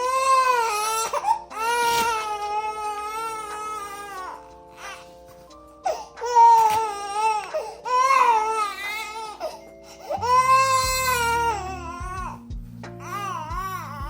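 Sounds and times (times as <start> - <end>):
baby crying: 0.0 - 12.4, 13.0 - 14.0
music with sustained notes: 0.0 - 14.0.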